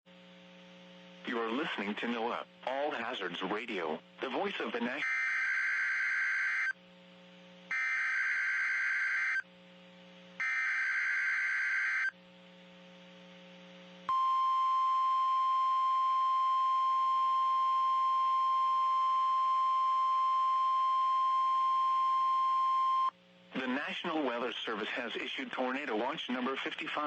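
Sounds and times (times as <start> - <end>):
continuous high alert beep: 14.1 - 23.1.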